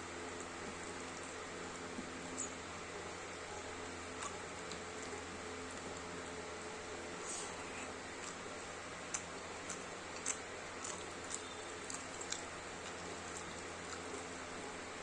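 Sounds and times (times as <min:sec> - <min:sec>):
person chewing with mouth clicks: 0:04.2 - 0:06.1, 0:07.2 - 0:14.4.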